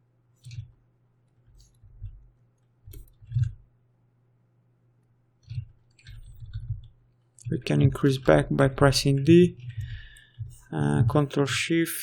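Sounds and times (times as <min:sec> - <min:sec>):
faint low hum: 0:00.0 - 0:12.0
mouse and keyboard clicks: 0:00.4 - 0:00.8, 0:02.9 - 0:03.6, 0:05.4 - 0:07.6.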